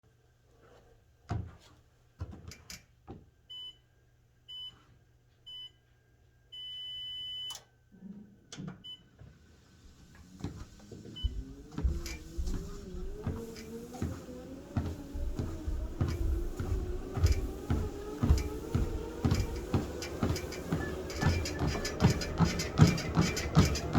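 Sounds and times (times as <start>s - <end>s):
footfalls on treadmill belt: 1.2s - 3.3s, 10.1s - 23.9s
treadmill console beeping: 3.5s - 3.8s, 4.5s - 4.8s, 6.5s - 7.7s, 8.8s - 9.2s, 10.4s - 23.9s
treadmill motor whining: 9.2s - 23.9s.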